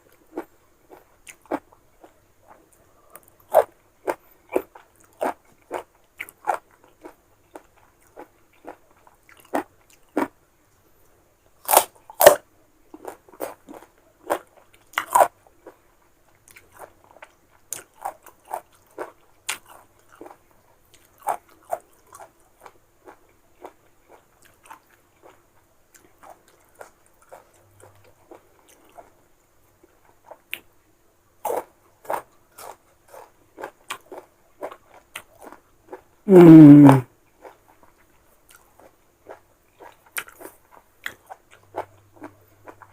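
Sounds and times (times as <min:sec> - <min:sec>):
crunchy bites and chewing: 0:11.6 - 0:12.4.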